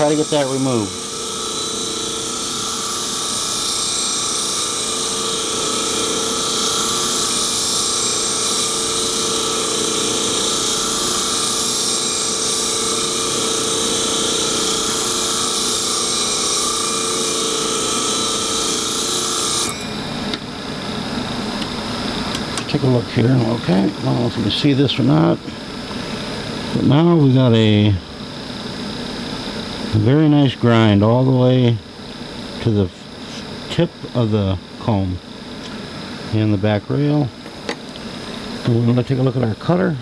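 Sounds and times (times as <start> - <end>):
blade sharpening machine grinding: 0.0 - 27.6.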